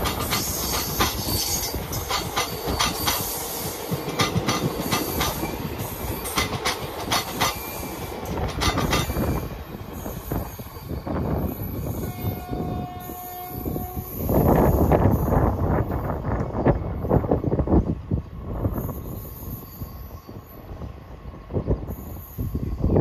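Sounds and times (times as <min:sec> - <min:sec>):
train wheels clickety-clack: 0:00.0 - 0:10.6
train rumble: 0:00.0 - 0:23.0.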